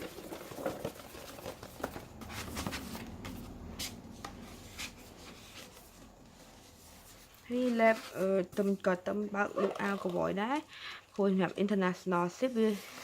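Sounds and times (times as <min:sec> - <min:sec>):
paper rustling: 0:00.0 - 0:08.7, 0:12.4 - 0:13.0.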